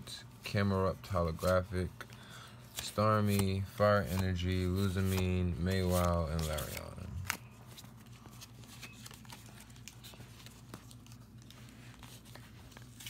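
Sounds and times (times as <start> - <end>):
steady low hum: 0.0 - 13.0
light ticks of cards: 1.4 - 7.4.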